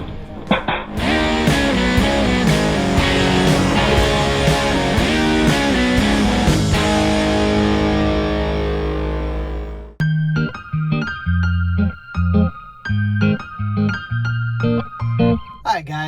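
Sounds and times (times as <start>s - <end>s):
distorted electric guitar rock: 1.0s - 10.0s.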